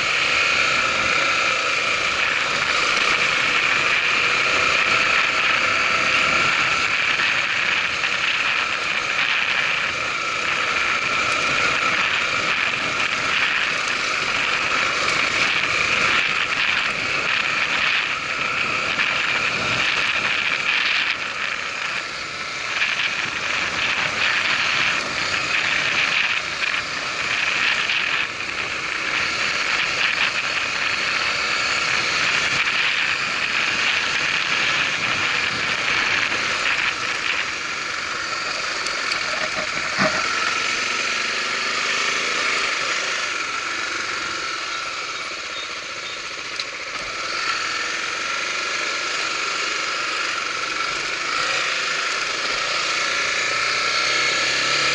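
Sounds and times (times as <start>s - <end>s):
motorcycle engine running: 0.0s - 54.9s
wind and road noise: 0.0s - 54.9s.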